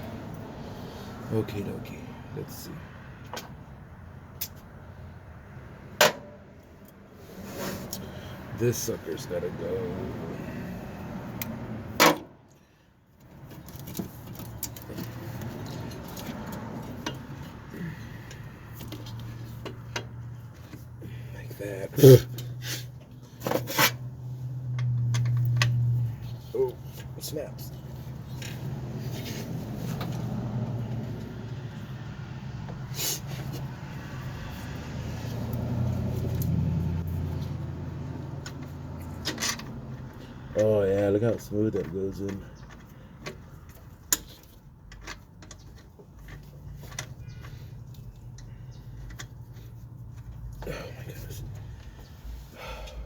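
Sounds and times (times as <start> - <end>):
motor vehicle engine running: 27.8 - 40.4.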